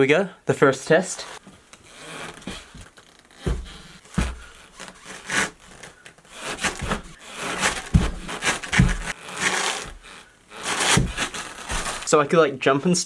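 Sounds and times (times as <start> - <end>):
velcro ripping: 1.2 - 12.1
boots thudding onto snowboard: 3.4 - 5.6, 6.4 - 12.2.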